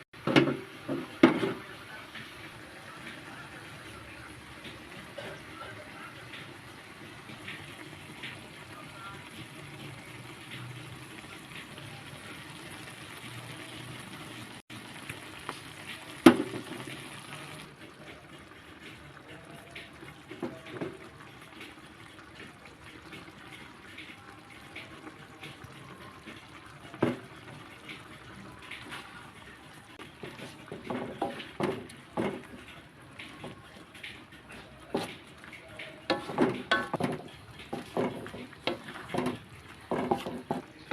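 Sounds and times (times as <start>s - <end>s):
running water: 0.0s - 40.9s.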